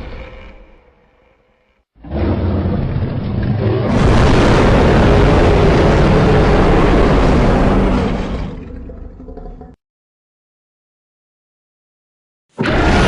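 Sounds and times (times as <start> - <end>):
deep monster roar: 0.0 - 9.8, 12.6 - 13.0.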